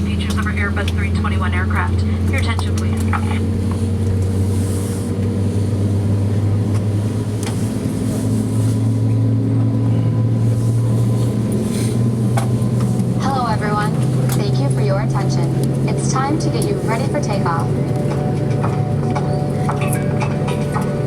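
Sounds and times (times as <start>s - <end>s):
airplane cabin drone: 0.0s - 21.0s.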